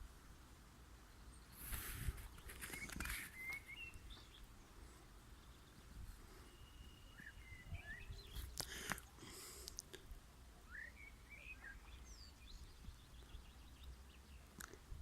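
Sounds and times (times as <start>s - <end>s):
songbirds chirping and whistling: 0.0s - 15.0s
rustling noise: 1.5s - 4.3s.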